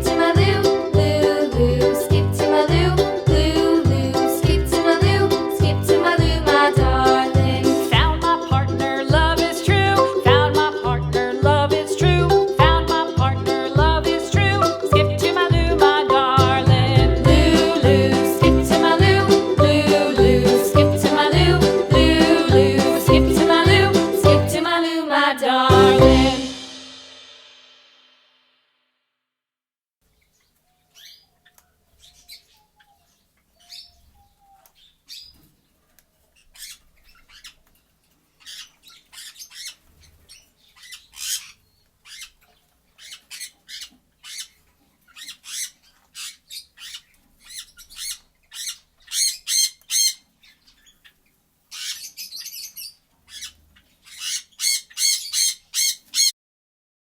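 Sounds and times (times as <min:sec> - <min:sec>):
parrot squawking: 0:45.2 - 0:50.2, 0:51.7 - 0:56.3.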